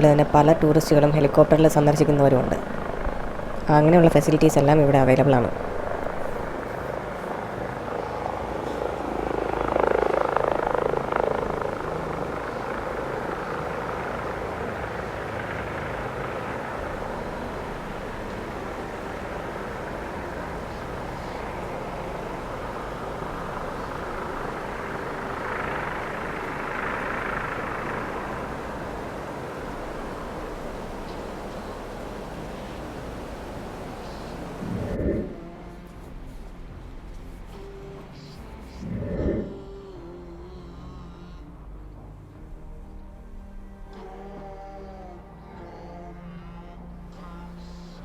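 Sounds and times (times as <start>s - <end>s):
helicopter flying: 0.0s - 48.0s.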